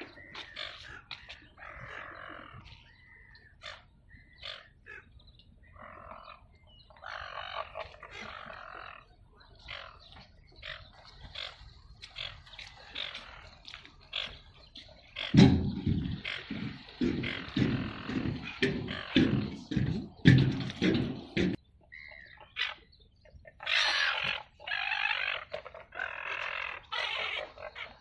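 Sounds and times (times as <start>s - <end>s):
birds chirping: 0.0s - 28.0s
birds squawking harshly: 0.0s - 28.0s.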